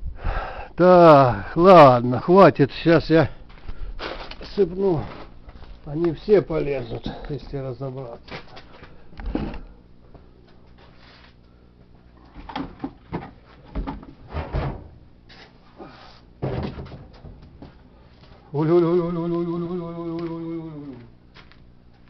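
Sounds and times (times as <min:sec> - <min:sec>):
clattering and rustling: 0:12.2 - 0:15.6, 0:16.4 - 0:18.4
man's long wavering call: 0:18.5 - 0:21.1.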